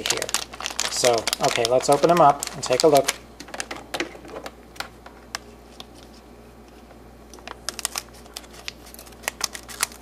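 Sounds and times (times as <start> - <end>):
plastic bag and pieces clicking: 0.0 - 4.6, 7.3 - 10.0.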